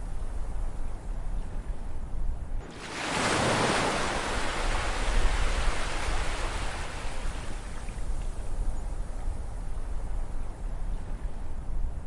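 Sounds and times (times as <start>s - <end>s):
ocean surf rumble: 2.6s - 8.1s
faint surf hiss: 2.6s - 11.6s.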